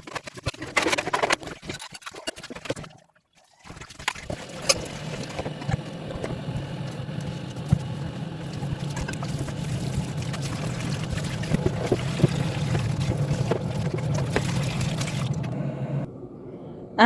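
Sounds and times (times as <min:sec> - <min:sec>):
tap water running and splashing: 0:02.5 - 0:15.6.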